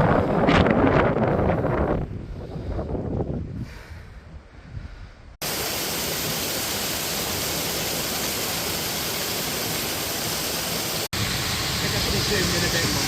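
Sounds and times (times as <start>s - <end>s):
wind rumble on microphone: 0.0s - 5.4s
waterfall rushing: 5.4s - 13.0s.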